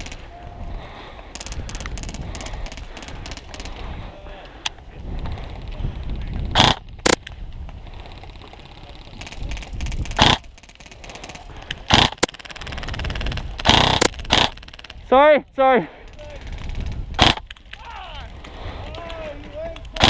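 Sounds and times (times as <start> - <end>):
wind rumble on microphone: 0.0 - 10.6, 16.2 - 20.0
airsoft gun bursts: 11.9 - 14.8.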